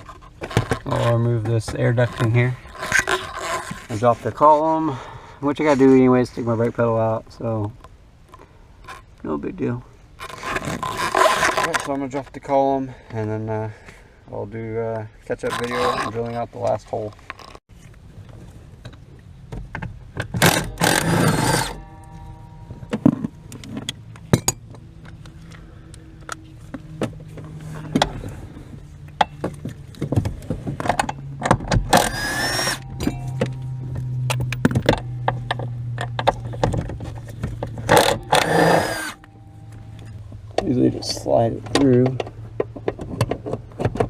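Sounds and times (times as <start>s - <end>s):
power tool bursts: 20.4s - 21.9s, 31.9s - 32.9s, 37.9s - 39.3s.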